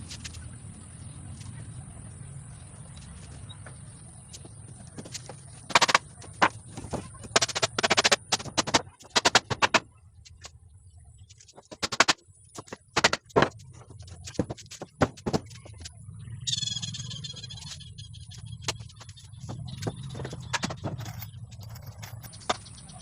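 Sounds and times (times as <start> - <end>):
hammering on wood: 5.7 - 9.8, 11.6 - 13.5, 14.3 - 15.7.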